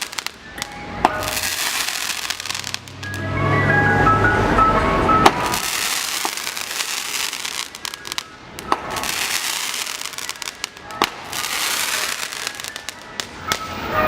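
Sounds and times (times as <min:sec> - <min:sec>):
fireworks bangs: 0:00.0 - 0:03.1, 0:05.2 - 0:14.0
fireworks crackling: 0:00.0 - 0:03.3, 0:05.2 - 0:14.0.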